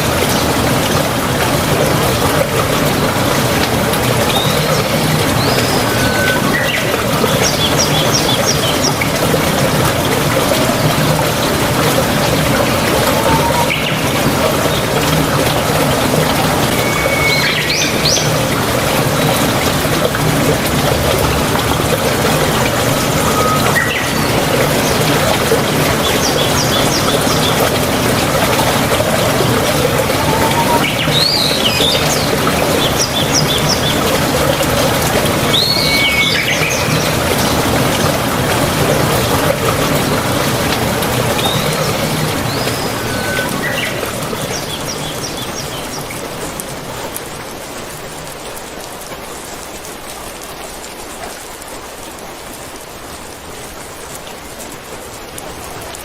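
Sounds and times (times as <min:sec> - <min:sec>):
rain hissing: 0:00.0 - 0:56.0
birds chirping: 0:03.8 - 0:09.4, 0:10.0 - 0:19.6, 0:21.5 - 0:46.1.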